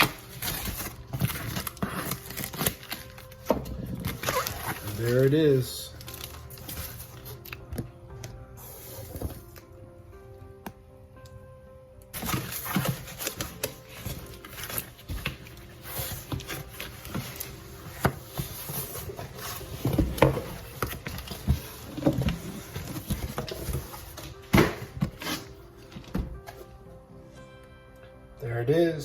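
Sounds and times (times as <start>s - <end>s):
packaging rustling: 0.0s - 7.7s, 12.2s - 26.1s.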